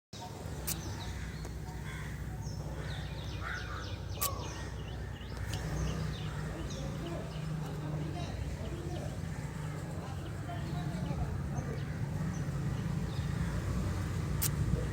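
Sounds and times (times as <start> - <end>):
birds chirping: 0.2 - 14.9
car engine humming: 0.2 - 14.9
sharp click: 4.2 - 4.5.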